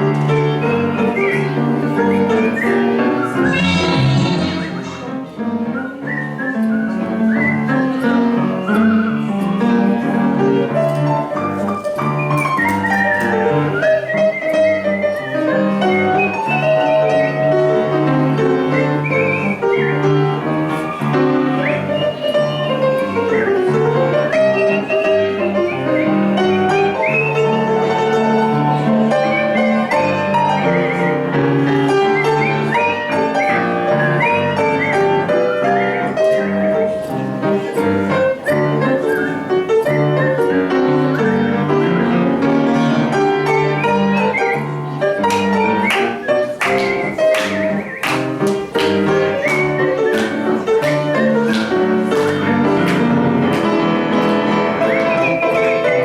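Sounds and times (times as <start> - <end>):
piano chords: 0.0 - 56.0
person whistling a melody: 0.6 - 9.3, 11.4 - 17.5, 18.7 - 20.2, 21.6 - 31.3, 32.0 - 36.6, 43.4 - 48.2, 48.8 - 52.2, 54.8 - 56.0
sharp accented piano strikes: 0.9 - 6.2.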